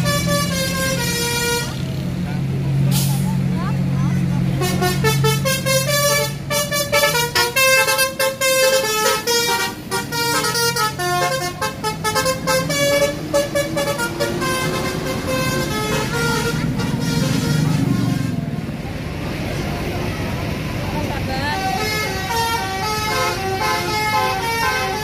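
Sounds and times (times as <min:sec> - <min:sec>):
melodic air horn tune: 0:00.0 - 0:01.8, 0:04.6 - 0:18.4, 0:21.5 - 0:25.0
bus engine hum: 0:00.0 - 0:25.0.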